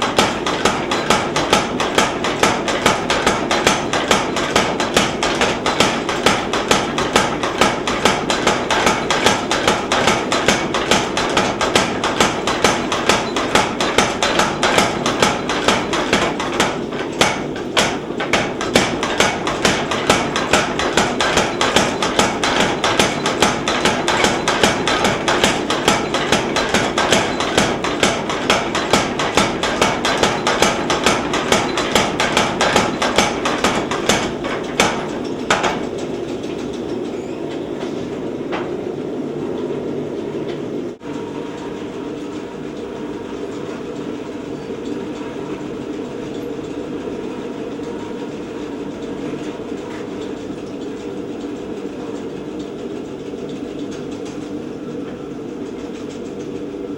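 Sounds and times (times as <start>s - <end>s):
power hammer pounding steel: 0.0s - 37.0s
hammer drive humming: 0.0s - 38.8s.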